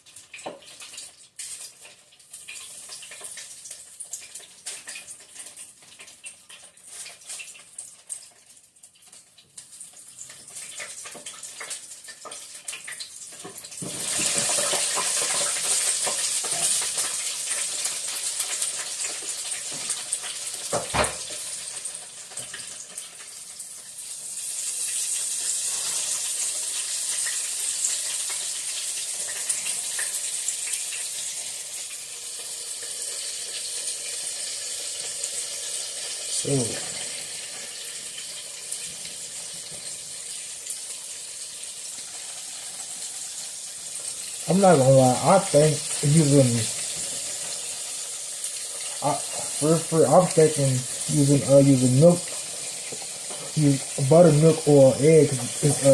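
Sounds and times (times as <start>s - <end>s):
chicken sizzling in hot oil: 0.0s - 55.9s.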